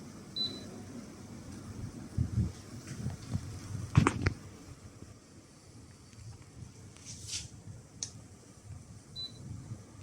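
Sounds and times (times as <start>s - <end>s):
air conditioner humming: 0.0s - 10.0s.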